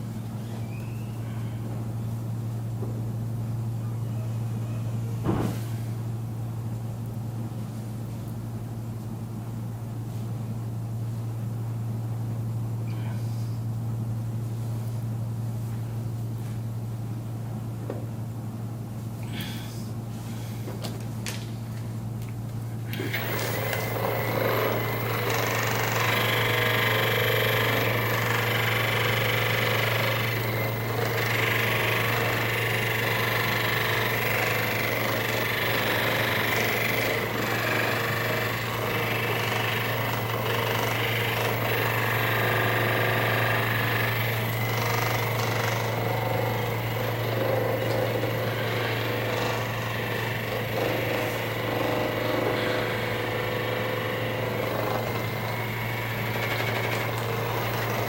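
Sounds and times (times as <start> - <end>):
massage gun buzzing: 22.9 - 58.0.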